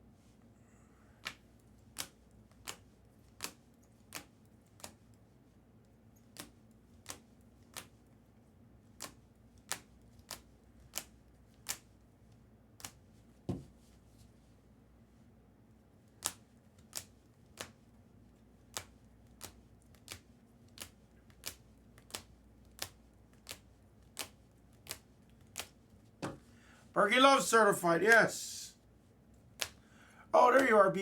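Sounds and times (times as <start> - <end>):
trading cards tapping on table: 13.5 - 13.7.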